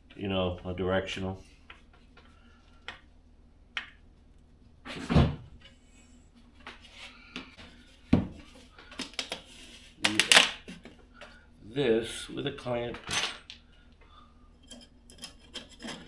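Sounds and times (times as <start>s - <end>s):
hands clicking and knocking parts: 8.9s - 10.6s.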